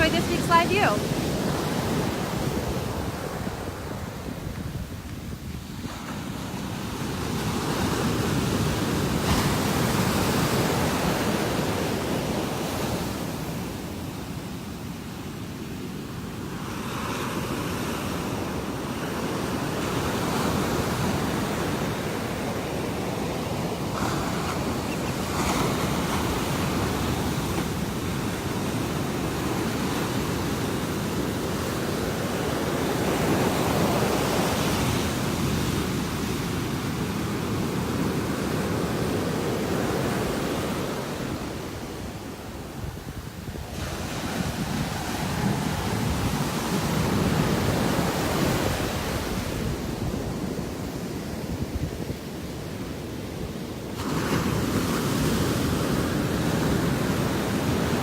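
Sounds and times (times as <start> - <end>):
ocean surf breaking: 0.0 - 58.0
wind buffeting microphone: 19.7 - 52.2.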